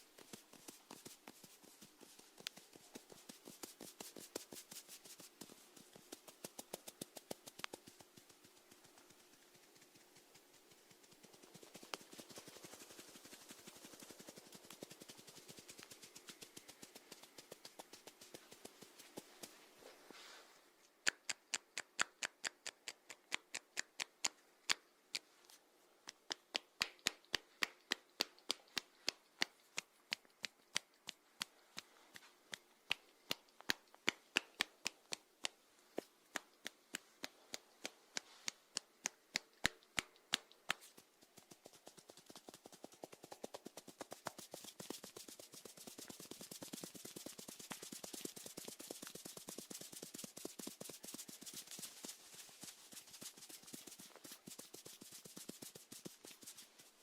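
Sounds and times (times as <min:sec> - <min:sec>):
snails clicking: 0:21.0 - 0:25.3, 0:26.0 - 0:41.5.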